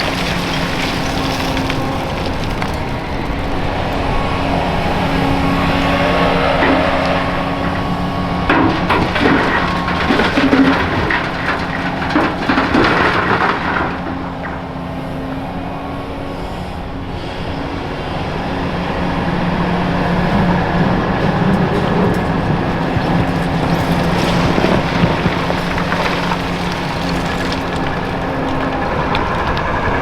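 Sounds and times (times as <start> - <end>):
crushed concrete rattling: 0.0 - 16.3, 19.9 - 30.0
heavy diesel engine running: 0.0 - 30.0.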